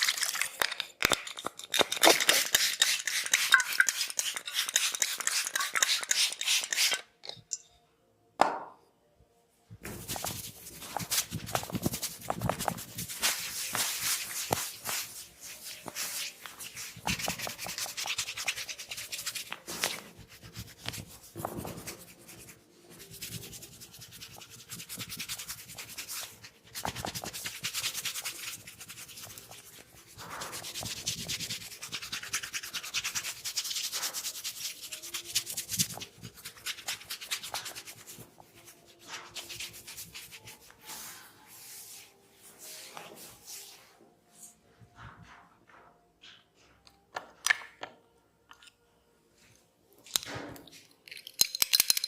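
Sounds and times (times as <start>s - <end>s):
hands rubbing scalp and hair: 9.8s - 43.9s.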